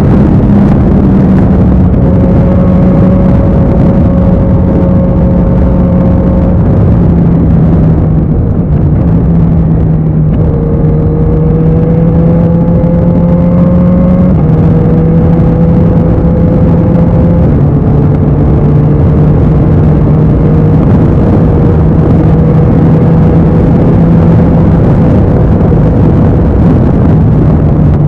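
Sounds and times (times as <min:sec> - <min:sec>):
motorcycle engine running loud: 0:00.0 - 0:28.0.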